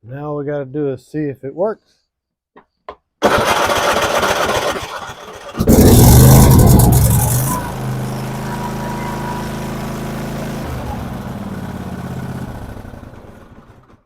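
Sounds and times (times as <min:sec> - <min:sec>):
electric starter cranking engine: 0:03.2 - 0:14.0
mower engine revving and running: 0:03.2 - 0:14.0.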